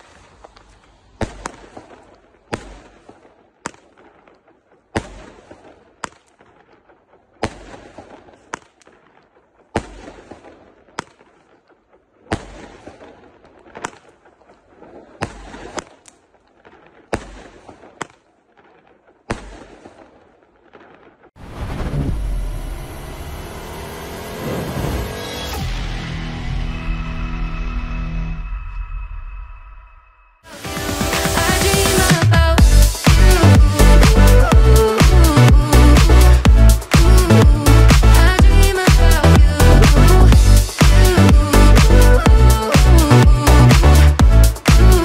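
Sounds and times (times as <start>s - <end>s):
sharp bangs with echoing rumble: 1.2s - 11.6s, 12.2s - 22.4s.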